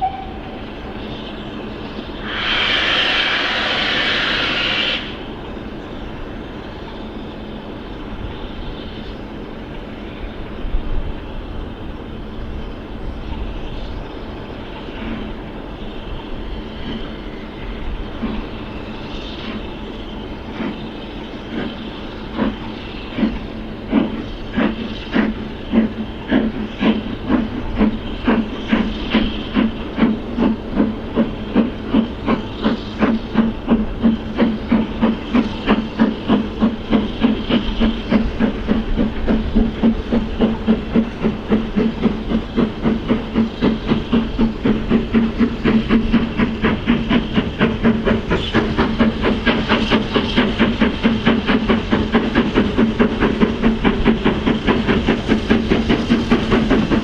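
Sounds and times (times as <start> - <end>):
steam hissing: 0.0 - 57.0
locomotive exhaust beats: 21.5 - 57.0.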